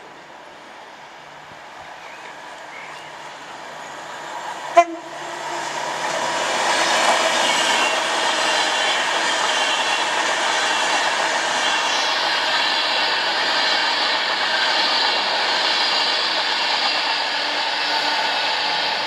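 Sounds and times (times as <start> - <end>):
train passing: 0.0 - 19.0
short train horn toot: 4.8 - 5.5.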